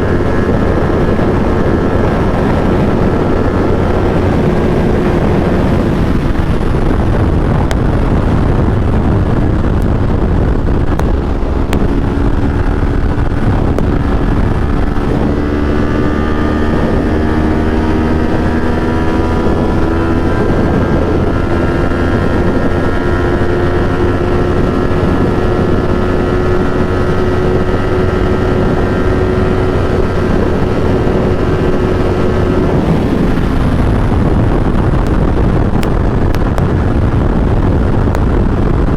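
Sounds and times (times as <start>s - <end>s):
motorcycle engine cruising: 0.0s - 38.9s
wind rush on microphone: 0.0s - 38.9s.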